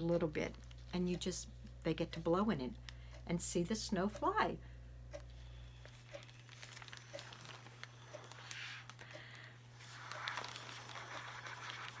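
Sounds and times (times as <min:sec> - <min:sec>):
plastic bag and paper ticks: 0:00.0 - 0:01.3, 0:05.9 - 0:12.0.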